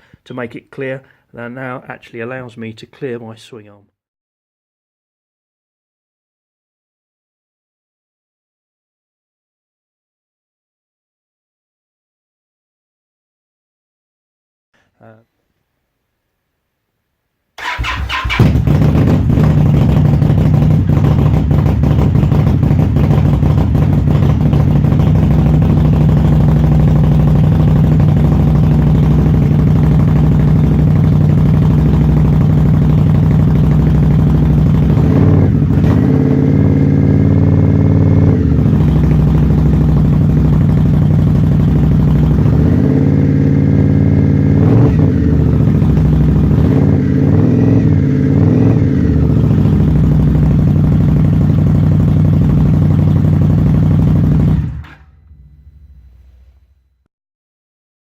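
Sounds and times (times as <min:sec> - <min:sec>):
motorcycle engine idling and revving: 0:17.6 - 0:55.6.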